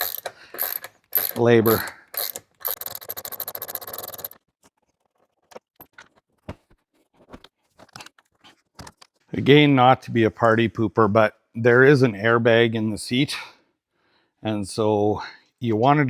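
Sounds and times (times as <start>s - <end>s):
ratchet clicking rapidly: 0.0s - 4.4s.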